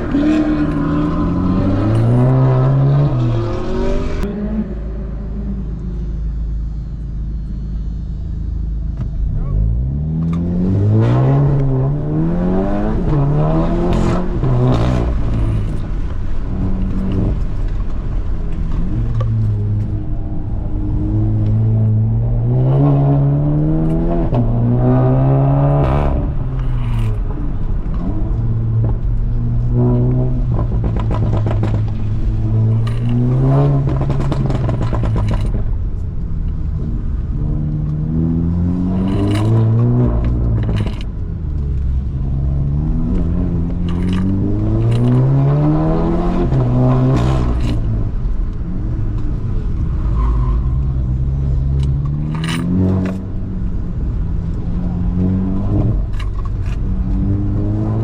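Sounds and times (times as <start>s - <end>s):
sharp clicks and rattles: 32.7s - 36.6s, 39.0s - 42.0s, 43.7s - 45.3s, 51.8s - 53.3s, 55.7s - 57.2s.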